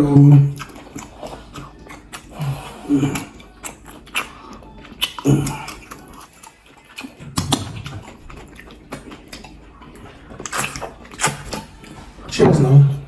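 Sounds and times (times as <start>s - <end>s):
wet chewing: 0.0s - 13.0s
mouth clicks and smacks: 5.0s - 9.6s.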